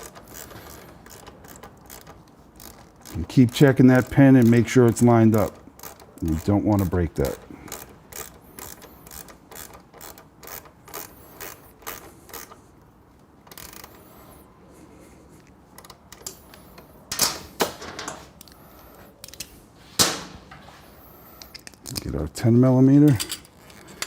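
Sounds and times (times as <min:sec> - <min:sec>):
ratchet wrench clicking: 0:00.0 - 0:12.6, 0:13.4 - 0:14.1.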